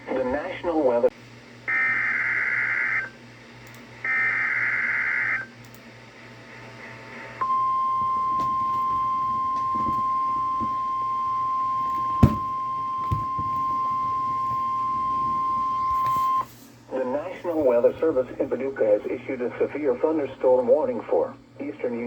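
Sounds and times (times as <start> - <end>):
steady warning alarm tone: 4.0 - 5.6, 7.4 - 17.9.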